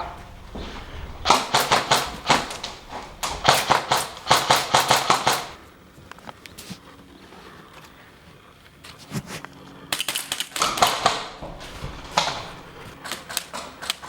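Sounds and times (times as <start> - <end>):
airsoft gun firing: 1.2 - 5.6, 9.9 - 11.5.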